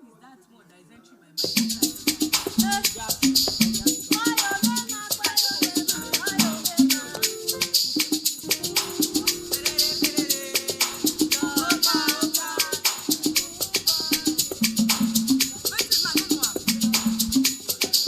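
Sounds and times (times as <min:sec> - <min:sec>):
shaker beat: 0:01.4 - 0:18.0
repeating bass line: 0:01.6 - 0:04.8, 0:08.4 - 0:12.3
gliding melody line: 0:05.7 - 0:14.4.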